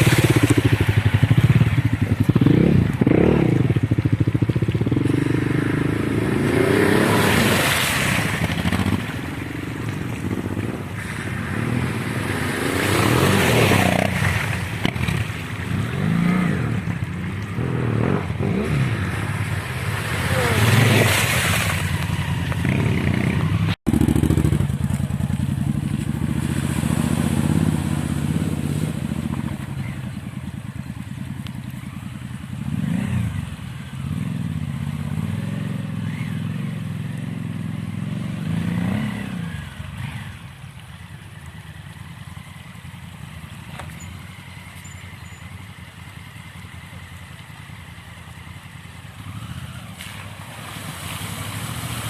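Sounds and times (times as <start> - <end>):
motorcycle engine revving: 0.0 - 40.4.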